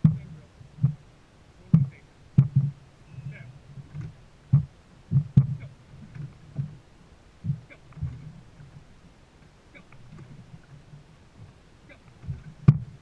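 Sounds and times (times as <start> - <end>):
dull thumps on boat hull: 1.8 - 2.8, 3.9 - 5.7, 12.3 - 12.9.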